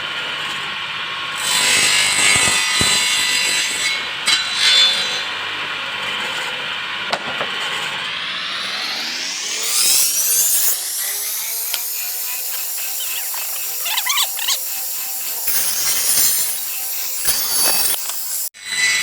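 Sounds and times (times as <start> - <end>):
power saw motor whine: 7.7 - 19.0
saw blade rasping through wood: 8.1 - 18.5.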